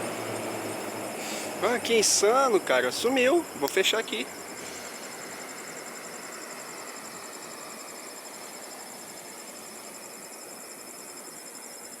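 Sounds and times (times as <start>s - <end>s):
steady hiss: 0.0s - 12.0s.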